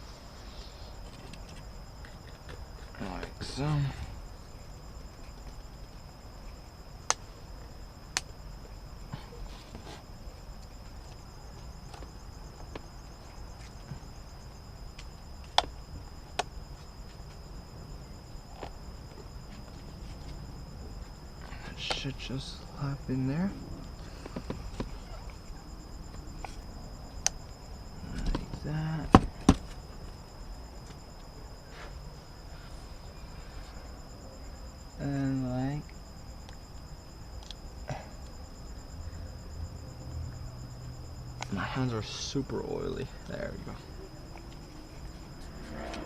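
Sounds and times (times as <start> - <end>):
crickets trilling: 0.0 - 46.0
steady high-pitched tone: 0.0 - 46.0.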